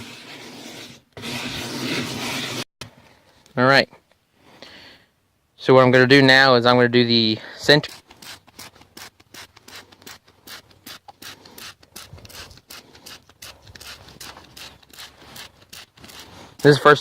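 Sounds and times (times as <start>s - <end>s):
scrub brush scrubbing tire tread: 0.0s - 2.6s, 7.7s - 17.0s.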